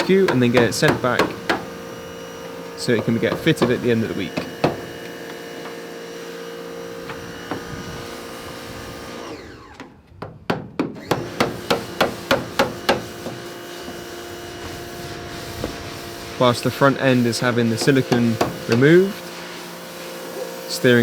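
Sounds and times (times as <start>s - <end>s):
hammer strikes: 0.0s - 1.7s, 3.0s - 5.0s, 10.5s - 13.5s, 17.8s - 18.9s.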